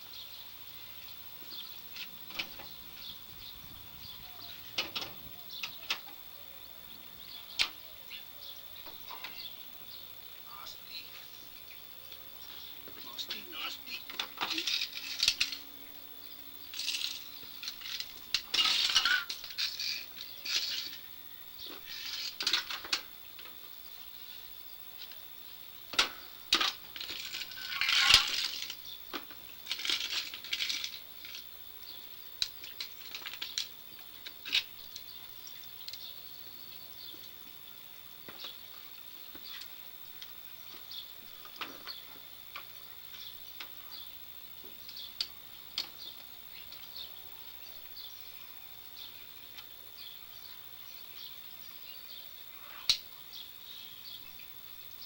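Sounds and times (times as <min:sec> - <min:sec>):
metal parts clinking and tapping: 0:14.0 - 0:15.7, 0:16.7 - 0:21.1, 0:21.7 - 0:23.6, 0:25.9 - 0:31.5.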